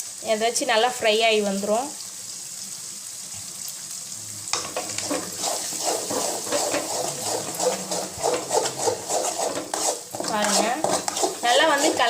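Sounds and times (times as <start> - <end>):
eggs sizzling in a pan: 0.0 - 12.0
spatula scraping a pan: 4.6 - 12.0.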